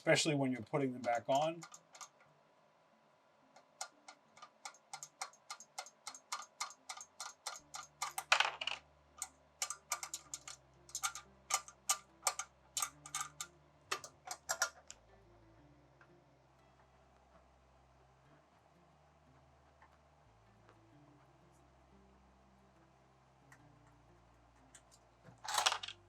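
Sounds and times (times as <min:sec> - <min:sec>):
ratchet wrench clicking: 0:01.1 - 0:02.1, 0:03.7 - 0:08.4, 0:09.2 - 0:14.8
metal clatter: 0:09.6 - 0:14.9, 0:25.4 - 0:26.0.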